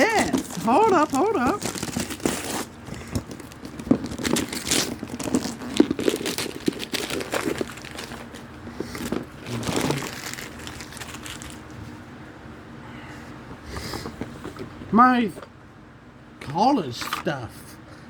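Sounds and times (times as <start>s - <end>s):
packaging wrap crinkling: 0.0s - 11.8s.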